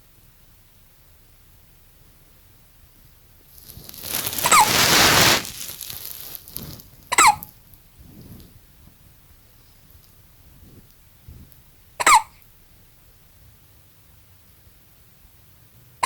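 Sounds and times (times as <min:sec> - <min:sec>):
loud burst of noise: 0:03.8 - 0:06.1
baby hiccuping: 0:07.1 - 0:07.4, 0:12.0 - 0:12.4.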